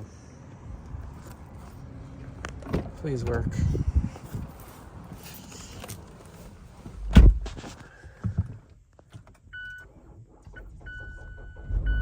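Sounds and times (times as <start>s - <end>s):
heavy thump: 7.0s - 8.5s
car electronic warning chimes: 9.5s - 9.9s, 10.5s - 12.0s.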